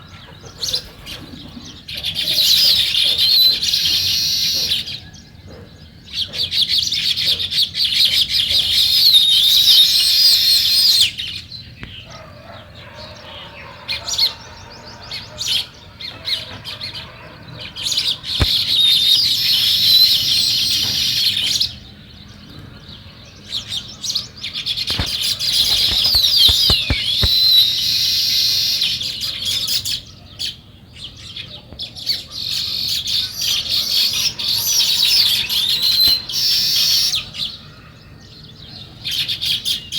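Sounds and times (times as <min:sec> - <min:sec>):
sparrows chirping: 0:00.0 - 0:39.9
sharp clicks: 0:24.9 - 0:27.6.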